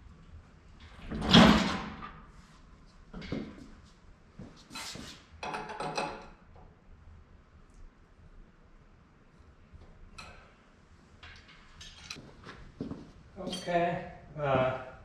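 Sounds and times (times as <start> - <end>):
metal parts clanking: 11.6 - 12.2.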